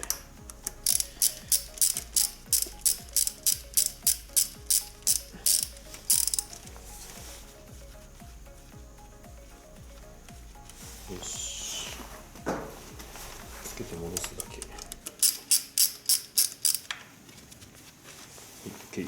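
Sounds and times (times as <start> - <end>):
ratchet wrench clicking: 0.0 - 6.8, 14.1 - 17.0.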